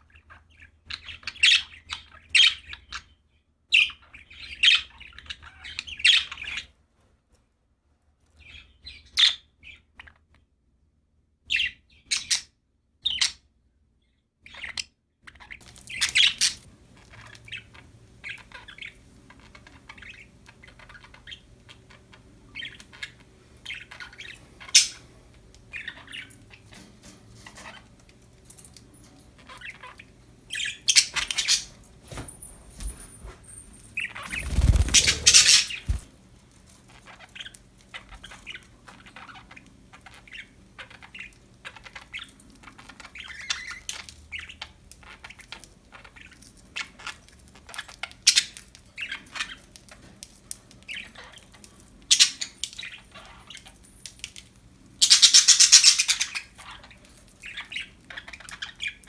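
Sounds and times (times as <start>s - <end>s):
budgies chirping and squawking: 0.1s - 3.2s, 3.8s - 6.7s, 14.5s - 28.0s, 29.4s - 31.8s, 34.0s - 36.1s, 36.9s - 50.1s, 50.7s - 53.8s, 55.0s - 59.0s.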